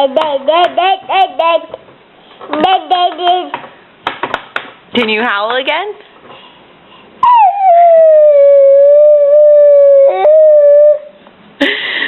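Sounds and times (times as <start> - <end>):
dog howling: 7.2 - 11.1.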